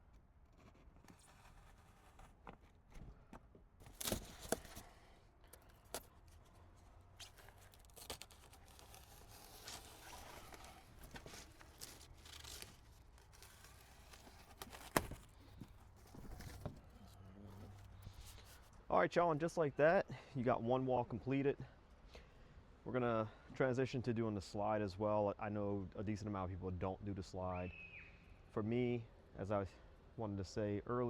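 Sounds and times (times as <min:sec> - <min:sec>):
tape tearing off roll: 0:03.8 - 0:06.5, 0:07.2 - 0:18.7.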